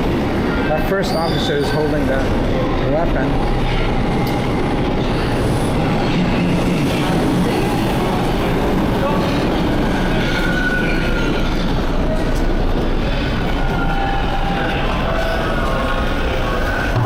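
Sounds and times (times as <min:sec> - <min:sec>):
subway train rumble: 0:00.0 - 0:17.0
high wheel squeal: 0:00.7 - 0:02.3, 0:09.0 - 0:12.3.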